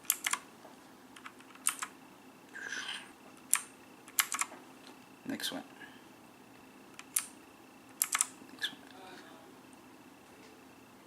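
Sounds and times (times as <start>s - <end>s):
mechanical keyboard key clicks: 8.0s - 8.3s.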